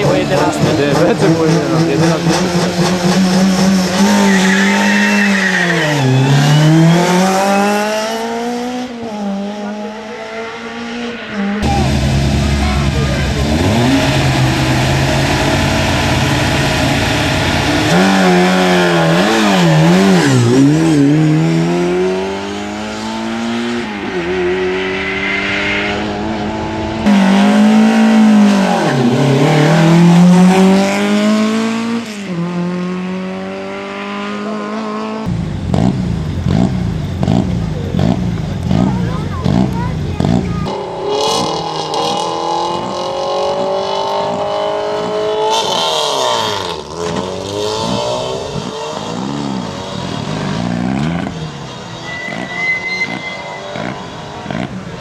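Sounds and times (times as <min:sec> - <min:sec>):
rally cars revving hard: 0:00.0 - 0:55.0
rally car engine idling: 0:11.6 - 0:18.0.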